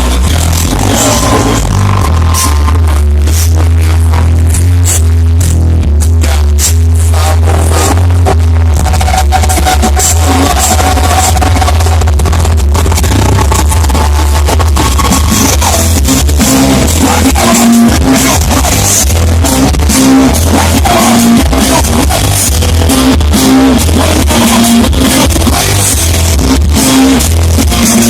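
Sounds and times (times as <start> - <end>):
electric guitars: 0.0 - 5.2, 6.2 - 28.0
person singing: 0.0 - 5.5, 6.1 - 28.0
bass guitar: 0.0 - 28.0
drum kit groove: 8.8 - 28.0.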